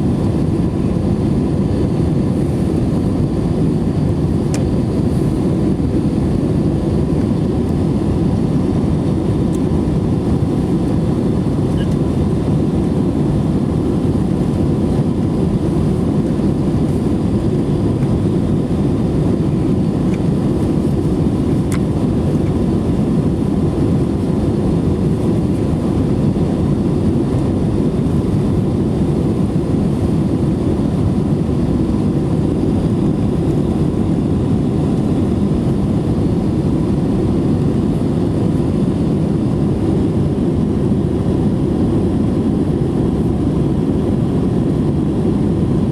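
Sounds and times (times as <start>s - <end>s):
airplane engine and airflow rush: 0.0s - 45.9s.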